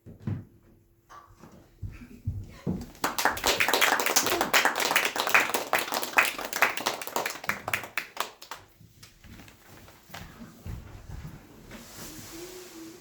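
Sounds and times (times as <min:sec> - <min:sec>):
audience clapping: 0:02.9 - 0:08.7.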